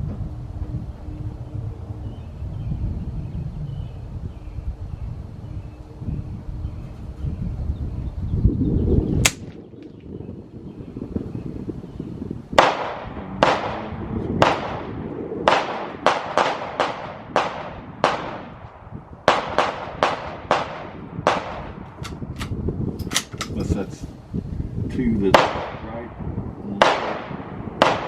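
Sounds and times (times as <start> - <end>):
rifle gunshots: 9.2 - 9.6, 12.6 - 13.8, 14.4 - 14.9, 15.5 - 18.6, 19.3 - 22.5, 26.8 - 28.0.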